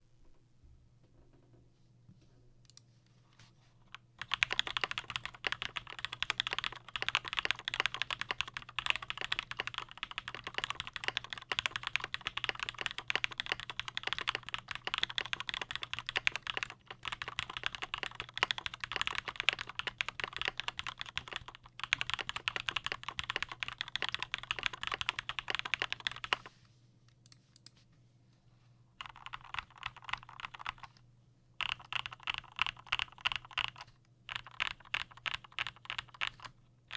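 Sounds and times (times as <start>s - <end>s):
mechanical keyboard typing: 3.9s - 26.5s, 29.0s - 31.0s, 31.6s - 36.5s.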